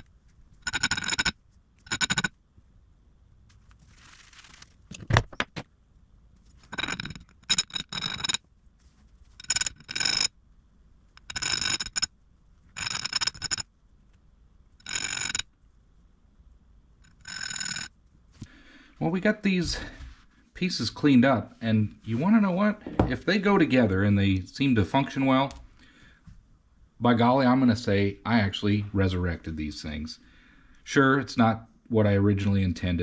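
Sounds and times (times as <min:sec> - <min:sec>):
short knock: 0:22.8 - 0:23.2.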